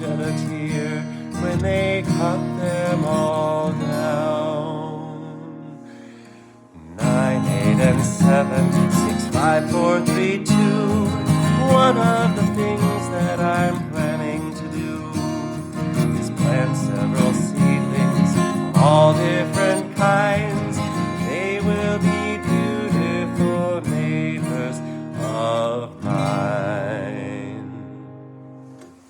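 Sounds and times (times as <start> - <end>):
acoustic guitar strummed and picked: 0.0 - 29.0.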